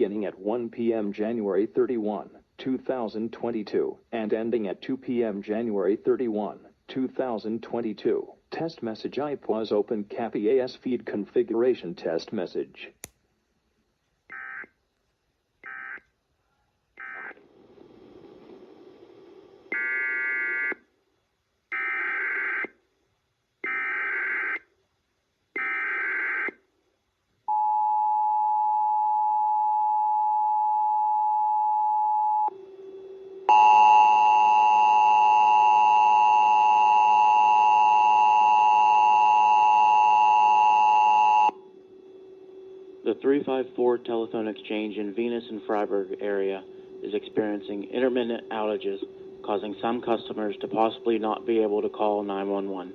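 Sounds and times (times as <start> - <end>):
buzzy attention tone: 40.8 - 52.9.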